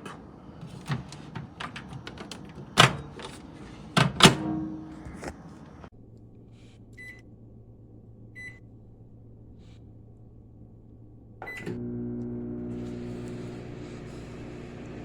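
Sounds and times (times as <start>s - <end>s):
microwave keypad beeps: 11.4s - 11.8s
microwave oven humming: 11.4s - 15.0s.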